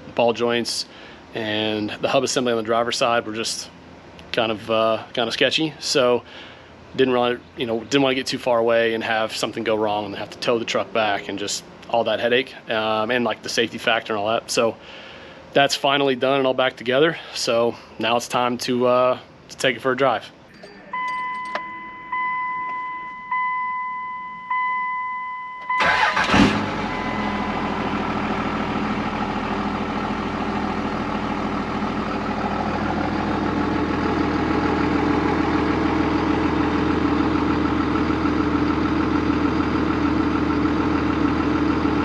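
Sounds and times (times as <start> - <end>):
diesel engine cranking and idling: 0.0 - 19.5, 25.6 - 42.0
truck warning chime dinging: 20.5 - 30.0.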